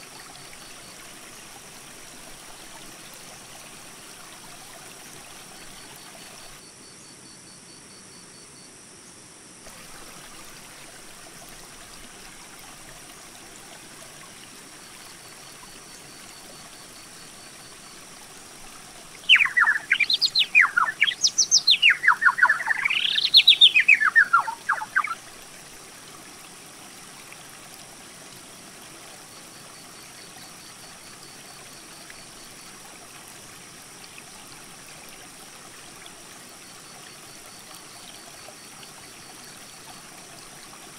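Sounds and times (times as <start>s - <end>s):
creek rushing: 0.0s - 6.6s, 9.7s - 29.1s
songbird singing: 19.2s - 25.2s.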